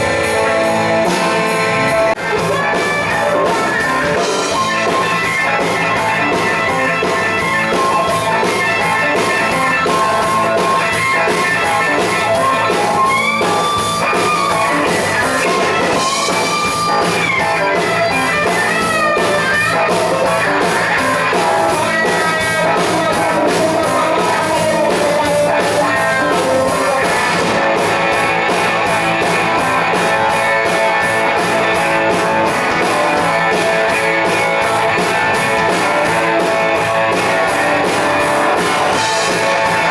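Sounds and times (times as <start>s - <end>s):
bent electric guitar notes: 0.0s - 39.9s
live rock band playing: 0.0s - 39.9s.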